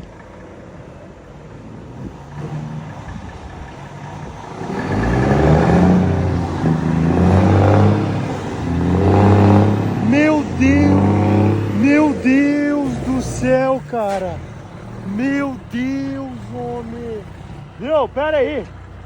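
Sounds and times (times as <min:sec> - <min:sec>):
truck engine roaring: 0:00.0 - 0:19.0.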